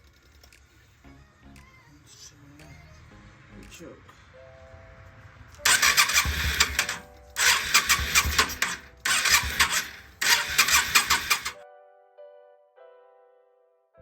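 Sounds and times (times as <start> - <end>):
background music: 0.0 - 14.0
motorcycle engine cranking: 5.6 - 11.6.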